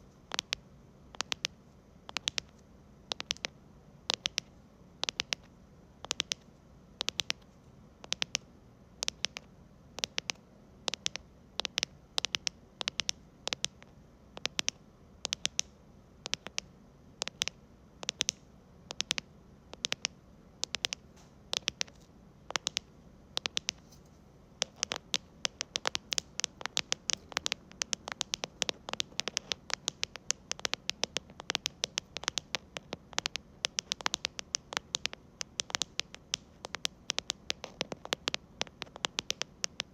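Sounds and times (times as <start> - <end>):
mechanical keyboard clicking: 6.1 - 6.4, 10.0 - 13.8, 19.8 - 21.9, 22.5 - 22.8, 24.6 - 39.9.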